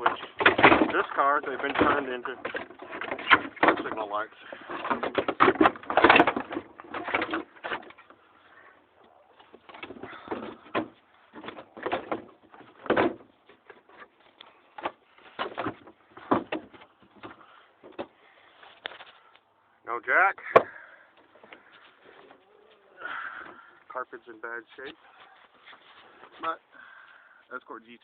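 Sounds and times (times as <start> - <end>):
car parts and bolts clattering: 0.0 - 8.3, 9.4 - 19.2.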